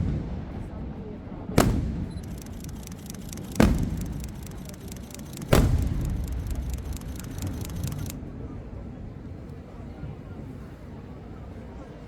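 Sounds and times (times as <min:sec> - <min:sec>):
fireworks exploding with echo: 0:03.6 - 0:04.6, 0:05.4 - 0:06.6.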